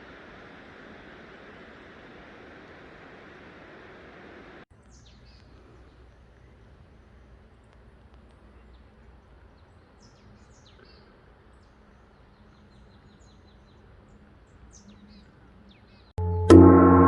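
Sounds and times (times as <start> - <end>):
soft outdoor hiss: 0.0 - 16.0
small birds chirping: 4.8 - 16.1.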